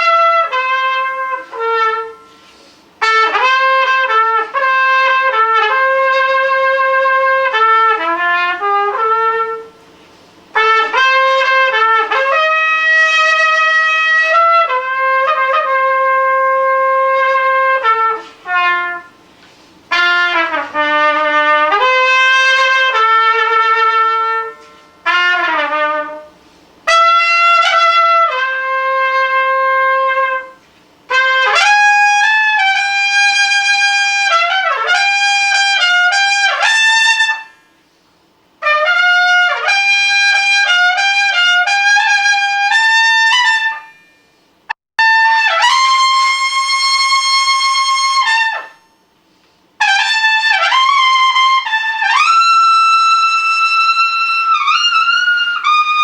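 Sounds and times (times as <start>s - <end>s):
solo horn playing: 0.0s - 37.9s, 38.6s - 44.3s, 45.0s - 49.0s, 49.8s - 56.0s.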